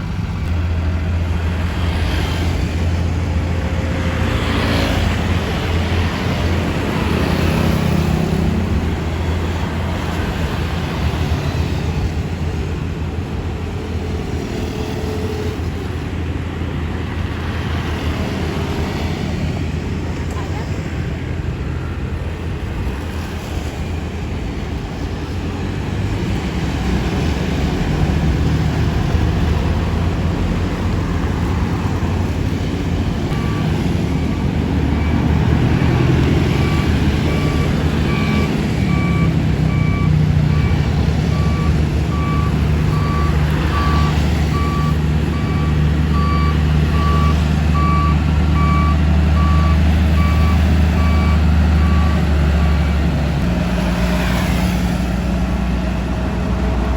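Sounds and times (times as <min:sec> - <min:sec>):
diesel engine running: 0:00.0 - 0:56.9
reversing alarm beeping: 0:33.3 - 0:52.8.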